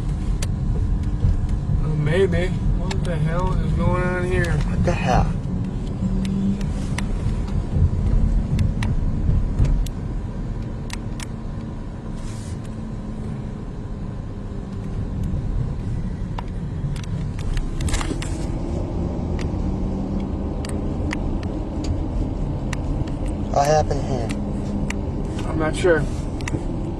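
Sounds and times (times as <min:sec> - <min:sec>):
car engine rumble in cabin: 0:00.0 - 0:26.9.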